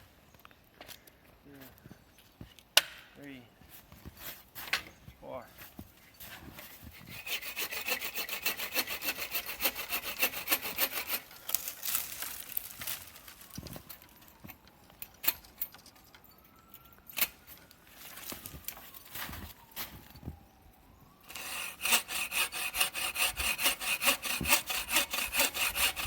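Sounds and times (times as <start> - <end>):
hand saw cutting log: 6.7 - 11.7, 21.3 - 26.0.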